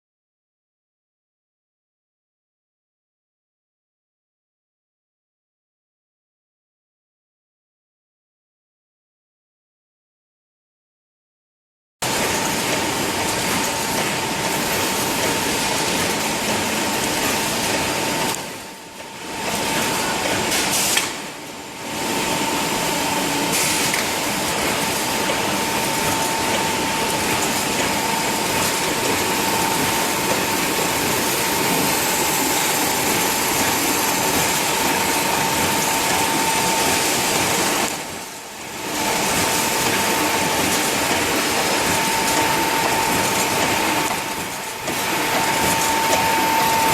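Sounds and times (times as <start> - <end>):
welding machine running: 12.0 - 46.9.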